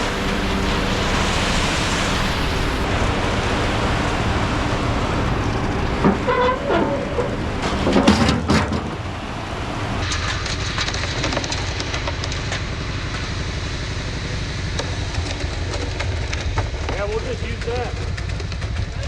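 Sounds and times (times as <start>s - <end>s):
diesel truck engine rumbling: 0.0s - 10.1s.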